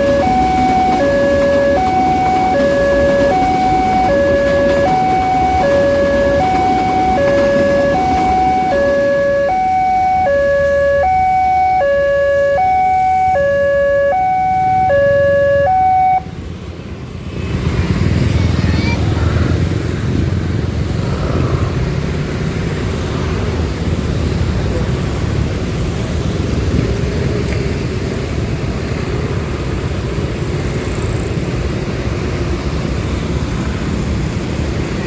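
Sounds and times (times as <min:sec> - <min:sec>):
level crossing two-tone alarm: 0:00.0 - 0:16.3.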